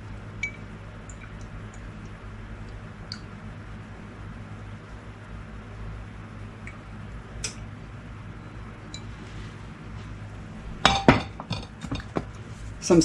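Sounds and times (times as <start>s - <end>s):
steady low hum: 0.0s - 13.0s
dishes clinking: 10.8s - 12.3s.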